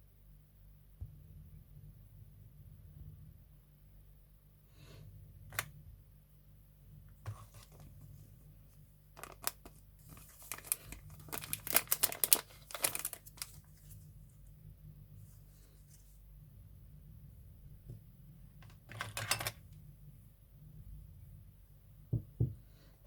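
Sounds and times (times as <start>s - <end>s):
crinkling and rustling: 7.2s - 14.5s, 18.6s - 19.8s.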